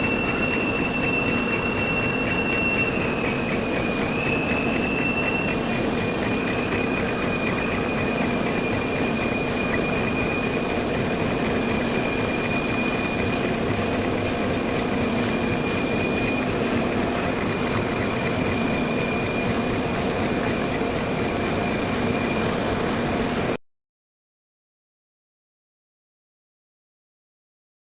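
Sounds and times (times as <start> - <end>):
lathe machining whine: 0.0 - 23.6.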